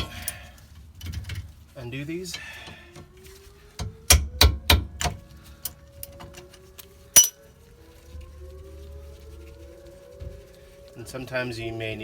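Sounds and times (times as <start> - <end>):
socket wrench clinking: 7.2 - 7.4.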